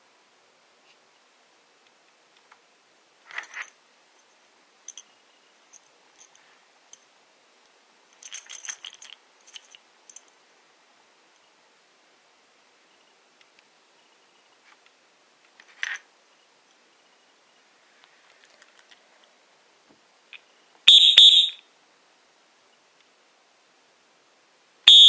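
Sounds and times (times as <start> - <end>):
plastic whistle clicking: 20.9 - 21.6.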